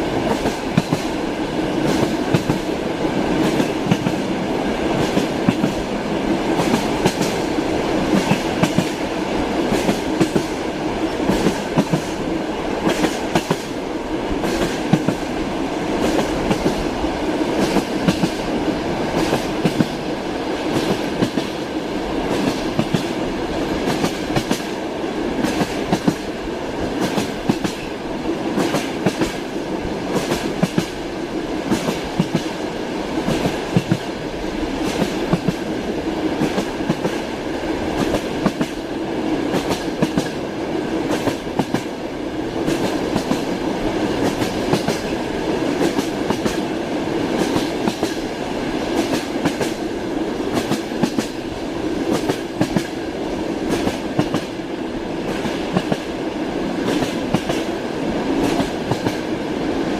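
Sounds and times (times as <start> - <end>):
train wheels clacking over rail joints: 3.4 - 4.3, 8.1 - 9.0, 11.2 - 12.2, 17.6 - 18.4, 19.2 - 20.0, 25.4 - 26.3, 26.9 - 27.9, 28.6 - 29.5, 30.1 - 31.0, 31.7 - 32.6, 38.0 - 38.8, 39.5 - 40.4, 44.1 - 45.1, 45.7 - 46.7, 48.9 - 49.8, 50.5 - 51.4, 52.0 - 53.0, 56.8 - 57.7, 58.4 - 59.2.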